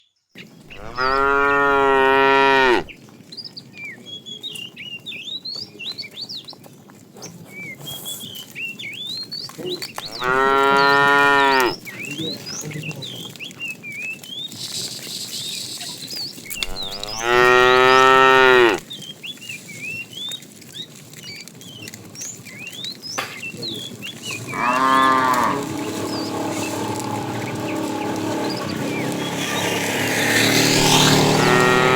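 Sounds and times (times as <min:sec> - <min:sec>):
cattle mooing: 0:00.7 - 0:02.9, 0:10.0 - 0:11.8, 0:16.5 - 0:18.8, 0:24.3 - 0:31.9.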